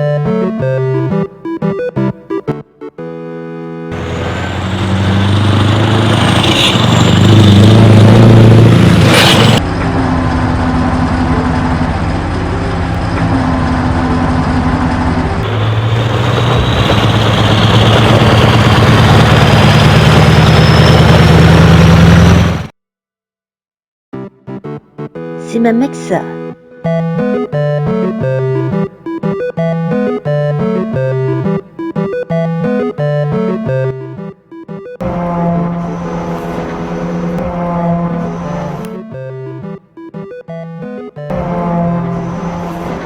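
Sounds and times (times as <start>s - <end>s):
truck engine revving: 3.9s - 22.8s, 35.0s - 39.7s, 40.5s - 43.0s.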